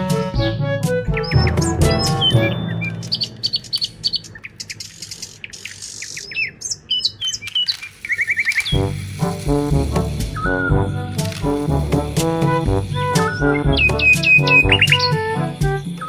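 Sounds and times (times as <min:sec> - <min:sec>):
background music: 0:00.0 - 0:04.3, 0:08.7 - 0:16.0
birds chirping: 0:00.0 - 0:08.9, 0:11.9 - 0:16.0.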